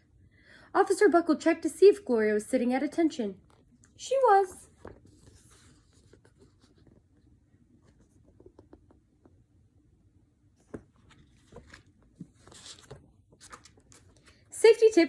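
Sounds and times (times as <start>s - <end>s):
paper rustling: 4.7s - 8.9s, 10.6s - 14.5s.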